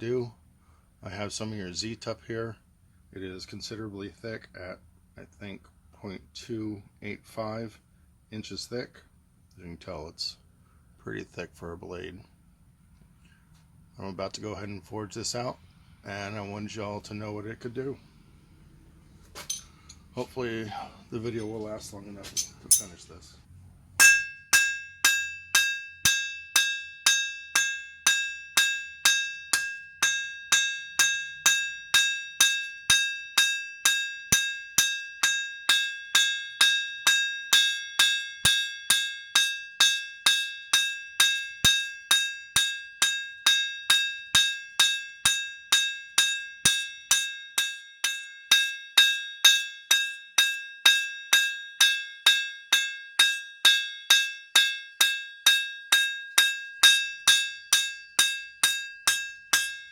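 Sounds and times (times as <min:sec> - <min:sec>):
hammer ringing on an anvil: 0:22.4 - 0:23.0, 0:24.0 - 0:59.9.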